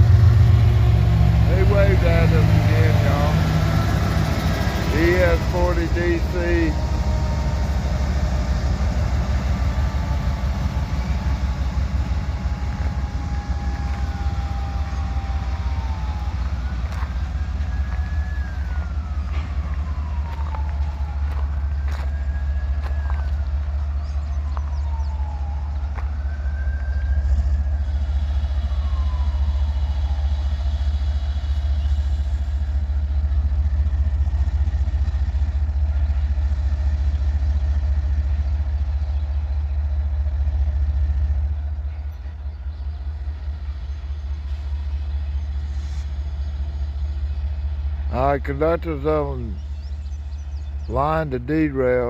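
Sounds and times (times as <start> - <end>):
siren wailing: 0.0 - 31.8
diesel locomotive engine rumbling: 0.0 - 52.0.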